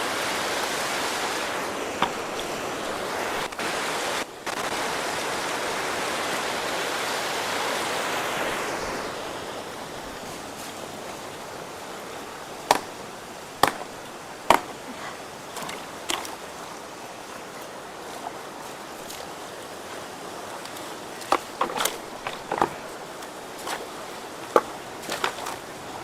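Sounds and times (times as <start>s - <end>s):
water rushing through a culvert: 0.0s - 26.0s
sticks knocking and clattering: 2.0s - 2.5s, 13.6s - 14.8s, 20.6s - 25.7s.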